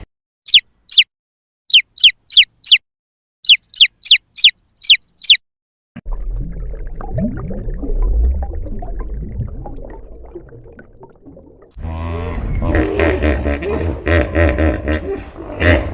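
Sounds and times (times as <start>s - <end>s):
high falling chirps: 3.4s - 5.4s
low rumble: 6.0s - 15.6s
lower rising calls: 11.8s - 15.9s.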